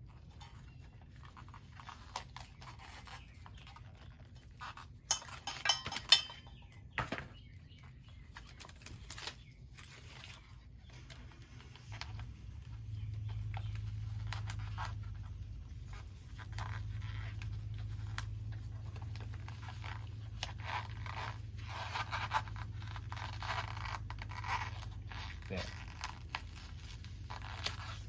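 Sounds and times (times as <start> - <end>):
foil tape crinkling and tearing: 0.0 - 5.1, 7.8 - 28.0.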